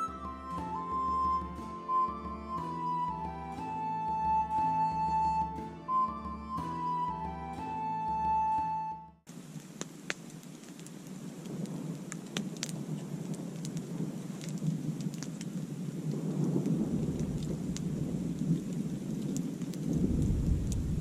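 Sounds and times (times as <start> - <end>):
raindrops ticking close by: 9.3 - 21.0
steady rain: 9.3 - 21.0
thunder rumbling: 11.2 - 21.0.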